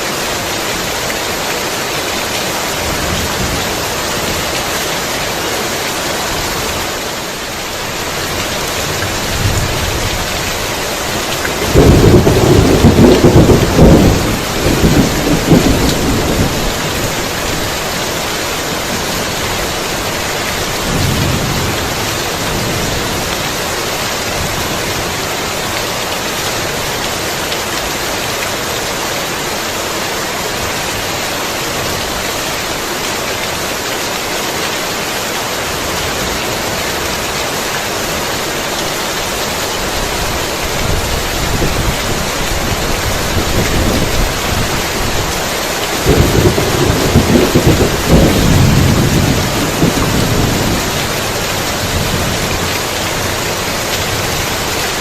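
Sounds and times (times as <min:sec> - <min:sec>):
heavy rain falling: 0:00.0 - 0:55.0
thunder rumbling: 0:08.2 - 0:17.8, 0:20.6 - 0:23.4, 0:40.8 - 0:53.4.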